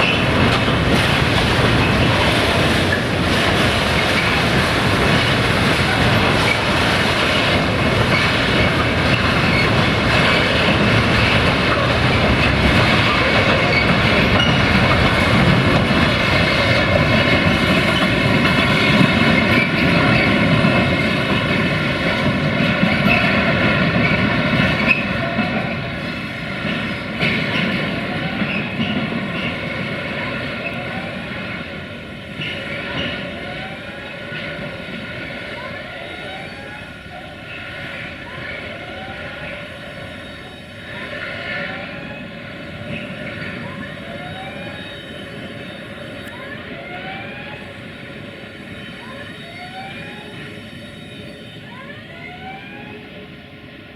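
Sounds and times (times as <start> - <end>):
freight train wagons rumbling: 0.0 - 53.9
ringing wheel squeal: 5.3 - 21.0, 32.3 - 47.7, 48.6 - 53.1.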